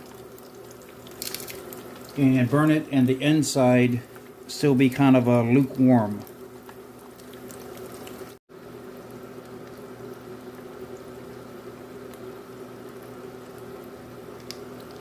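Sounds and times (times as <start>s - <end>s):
hot oil sizzling and bubbling: 0.0s - 15.0s
steady low hum: 0.0s - 15.0s
faint crackles: 5.5s - 11.4s.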